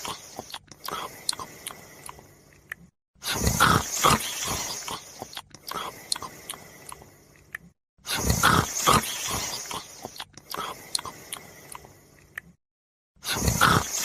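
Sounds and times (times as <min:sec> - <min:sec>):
quiet breathing: 0:00.0 - 0:12.4
loud rasping snore: 0:03.2 - 0:06.0, 0:08.1 - 0:10.8, 0:13.2 - 0:14.0.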